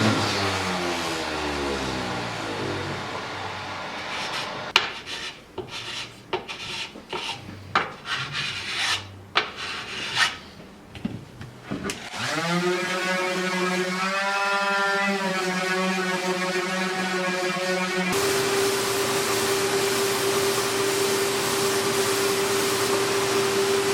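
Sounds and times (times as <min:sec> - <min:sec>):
hum rising in pitch: 0:00.0 - 0:04.7
steady machine noise: 0:00.0 - 0:04.7, 0:18.0 - 0:23.9
hand scraping and rasping workpiece: 0:03.9 - 0:10.6.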